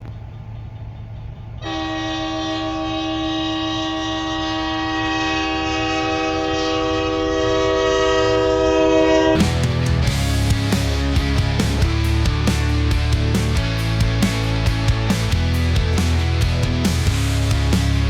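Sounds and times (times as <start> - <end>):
low rumble: 0.0 - 2.4, 9.2 - 18.0
multi-tone horn chord: 1.6 - 9.7.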